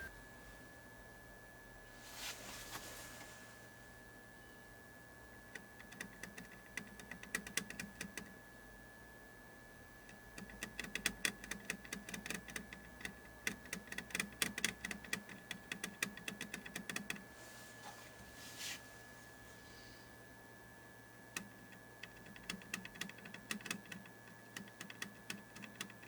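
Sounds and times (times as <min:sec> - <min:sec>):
rapid clicking taps: 0:05.6 - 0:08.3, 0:10.4 - 0:17.2, 0:21.4 - 0:26.0.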